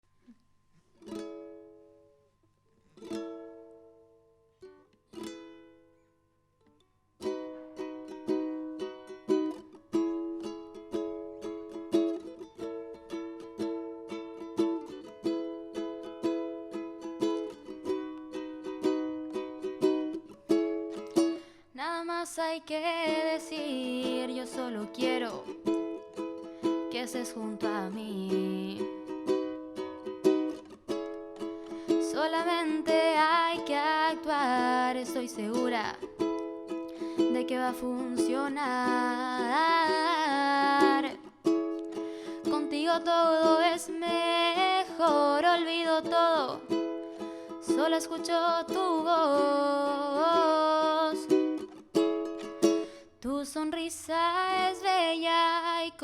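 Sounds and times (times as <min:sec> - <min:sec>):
strummed string instrument: 0:00.8 - 0:21.8, 0:22.6 - 0:53.3
ukulele-like picked notes: 0:01.0 - 0:06.0, 0:07.2 - 0:21.5, 0:22.9 - 0:53.0
person singing with vibrato: 0:21.7 - 0:26.0, 0:26.6 - 0:29.1, 0:31.8 - 0:51.6.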